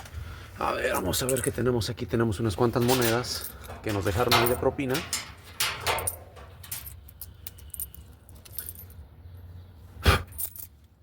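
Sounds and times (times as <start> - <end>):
coins clinking and jingling: 2.8 - 9.0, 10.3 - 10.8.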